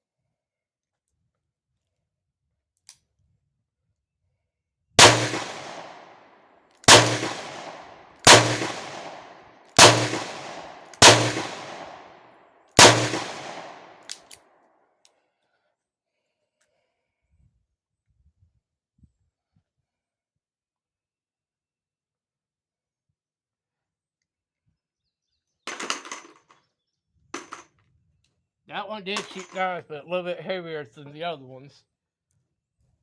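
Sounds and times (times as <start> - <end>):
revolver gunshots echoing: 5.0 - 6.2, 6.8 - 12.2, 12.8 - 14.2.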